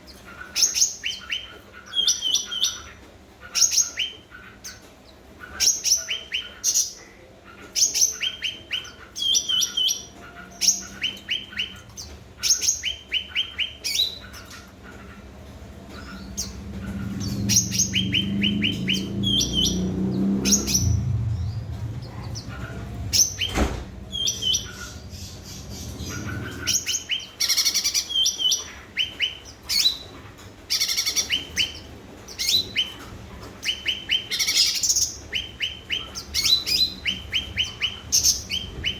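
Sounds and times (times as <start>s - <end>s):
low rumble: 15.0s - 26.8s.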